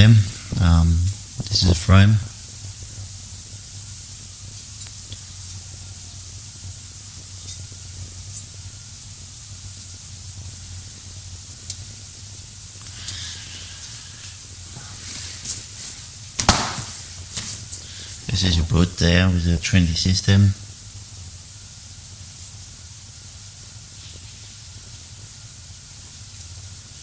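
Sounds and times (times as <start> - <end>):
low electrical hum and hiss: 0.0 - 27.0
soft rustle: 12.8 - 16.2, 16.8 - 18.2.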